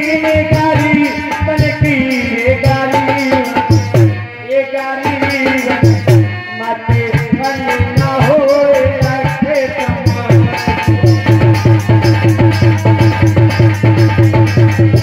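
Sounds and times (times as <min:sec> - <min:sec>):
steady drum strokes: 0:05.2 - 0:15.0.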